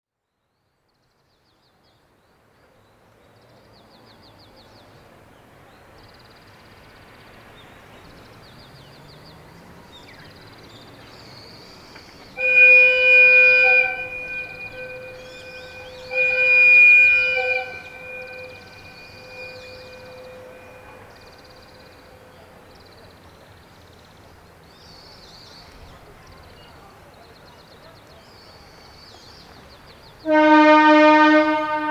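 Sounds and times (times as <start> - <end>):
railway whistle blasts: 12.2 - 22.2, 30.2 - 31.9.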